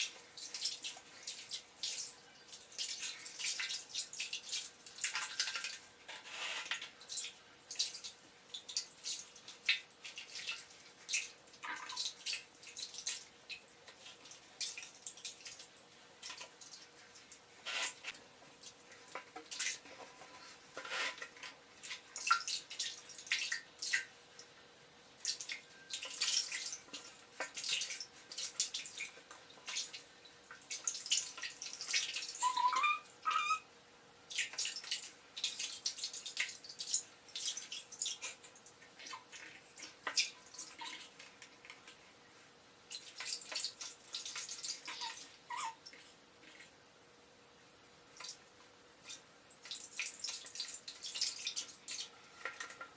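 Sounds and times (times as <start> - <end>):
bath water splashing: 0.0 - 19.9, 21.7 - 24.5, 25.2 - 32.6, 34.2 - 41.3, 42.8 - 46.8, 48.1 - 52.2
kitten meowing: 32.4 - 33.7.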